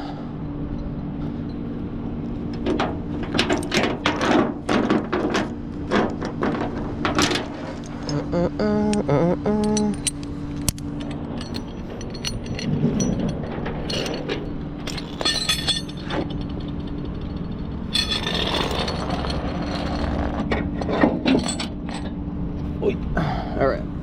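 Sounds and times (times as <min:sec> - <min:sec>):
metal hooks and chains clinking: 0:02.6 - 0:08.4, 0:09.5 - 0:22.2.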